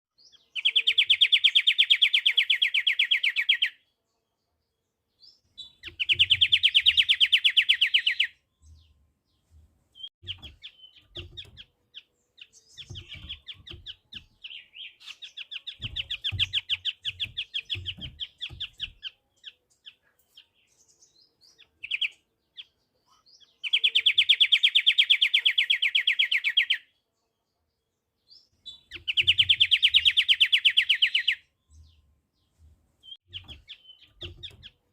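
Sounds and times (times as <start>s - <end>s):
bird singing rapid trills: 5.2s - 8.9s, 10.0s - 20.0s, 28.3s - 32.0s, 33.1s - 34.9s.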